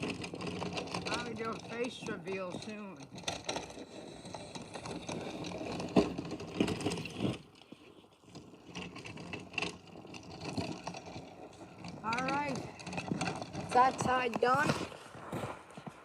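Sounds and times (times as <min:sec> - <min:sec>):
plow blade scraping snow: 0:00.0 - 0:16.0.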